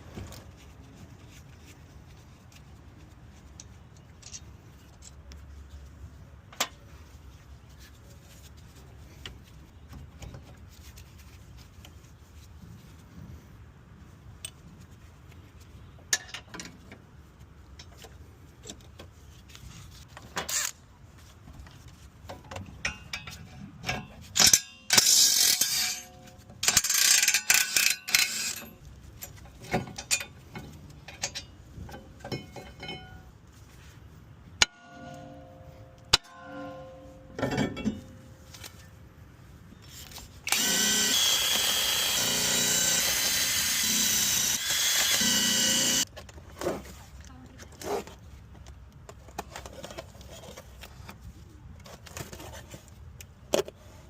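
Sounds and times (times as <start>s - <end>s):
tools clicking and clattering: 22.2s - 33.3s, 34.6s - 38.9s
power tool bursts: 40.5s - 46.0s.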